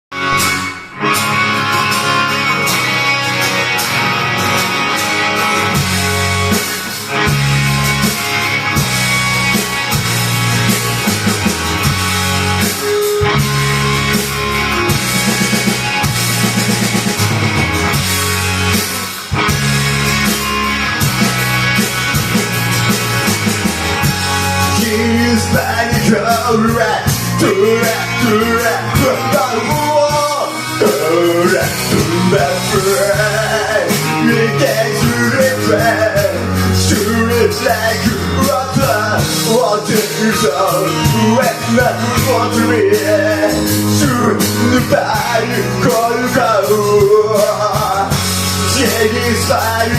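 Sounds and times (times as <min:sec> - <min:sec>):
rock band playing: 0:00.1 - 0:49.9
person singing: 0:23.9 - 0:49.9.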